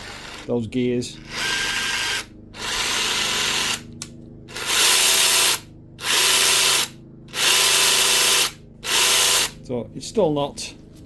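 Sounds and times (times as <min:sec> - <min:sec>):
impact wrench grinding: 0:01.2 - 0:09.6.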